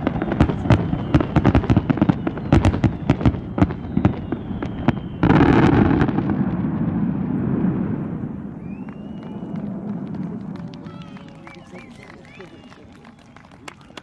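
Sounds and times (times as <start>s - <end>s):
unbroken wash of firework sound: 0.0s - 11.0s
fireworks bangs and cracks: 0.0s - 12.4s.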